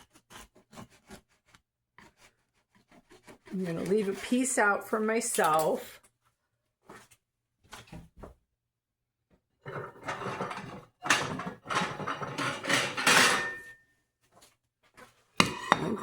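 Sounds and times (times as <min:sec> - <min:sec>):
knife sawing bread on wooden board: 0:00.0 - 0:04.5.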